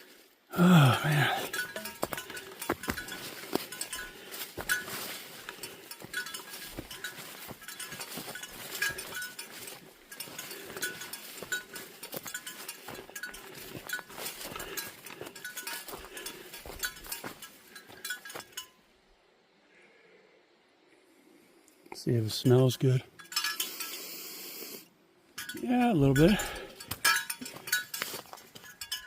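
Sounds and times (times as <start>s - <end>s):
footsteps on dirt trail: 0.0s - 18.7s, 26.0s - 29.0s
light clinking: 0.5s - 18.9s, 22.4s - 29.0s.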